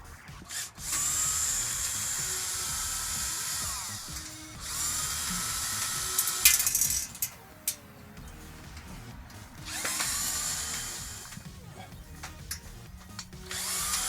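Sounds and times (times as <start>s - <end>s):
sharp metallic clicks and clatter: 0.2s - 14.0s
cordless drill motor whirring: 0.5s - 7.4s, 8.4s - 14.0s.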